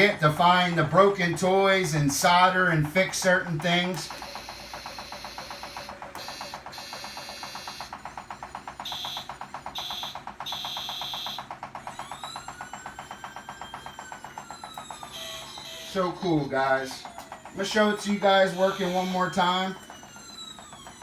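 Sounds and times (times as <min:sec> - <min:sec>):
rapid electronic pulsing: 0:00.0 - 0:21.0
wailing electronic tone: 0:08.8 - 0:21.0.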